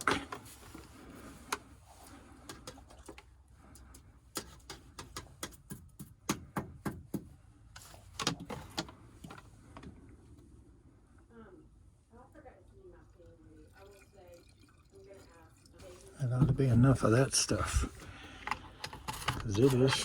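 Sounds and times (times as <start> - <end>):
tools clicking and knocking: 4.3 - 7.3, 18.4 - 20.0.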